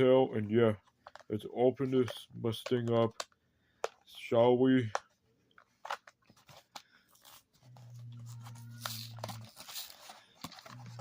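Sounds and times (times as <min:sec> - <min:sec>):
plastic packaging crinkling and tearing: 0:06.8 - 0:11.0.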